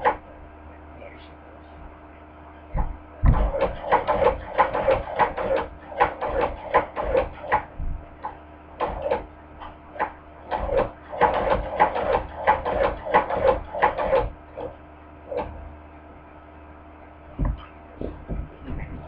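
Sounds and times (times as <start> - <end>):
sewing machine clacking: 3.4 - 7.7, 10.5 - 14.3.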